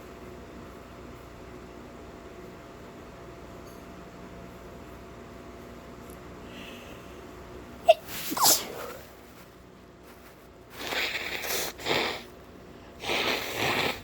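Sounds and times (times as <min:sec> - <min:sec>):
person sneezing: 0:07.9 - 0:09.1.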